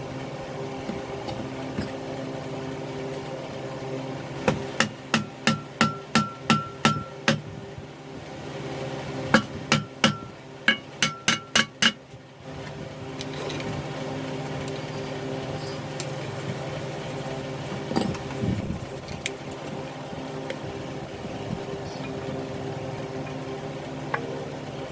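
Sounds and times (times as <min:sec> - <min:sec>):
low machine hum: 0:00.0 - 0:24.9
hammer ringing on metal: 0:04.8 - 0:07.4, 0:09.4 - 0:12.0.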